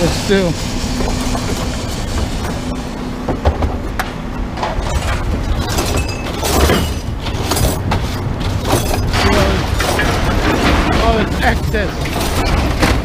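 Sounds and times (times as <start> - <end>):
truck engine rumbling: 0.0 - 13.0
metal scrap rattling: 4.5 - 13.0.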